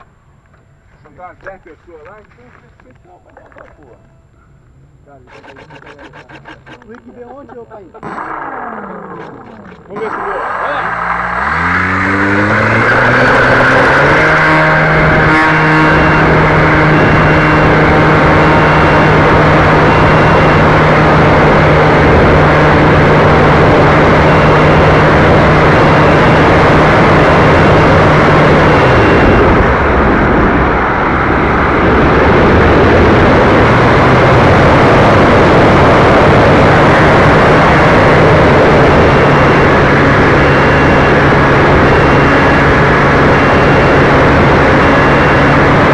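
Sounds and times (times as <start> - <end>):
model airplane motor whine: 3.8 - 45.9.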